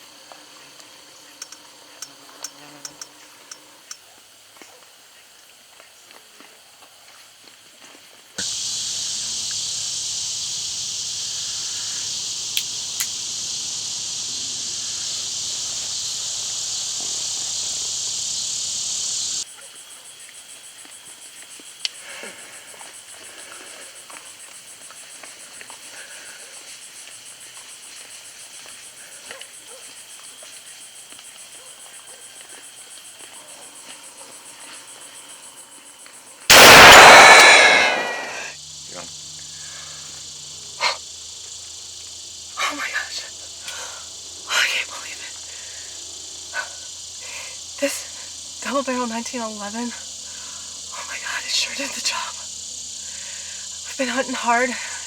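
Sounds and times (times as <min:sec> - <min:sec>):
night insects chirping: 0:08.4 - 0:55.0
loud pistol shot: 0:36.5 - 0:38.5.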